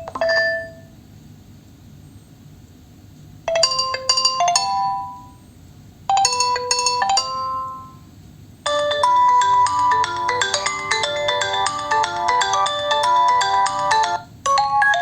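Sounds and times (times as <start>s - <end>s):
phone ringtone chime: 0.0s - 0.9s, 3.5s - 5.4s, 6.1s - 8.0s, 8.7s - 15.0s.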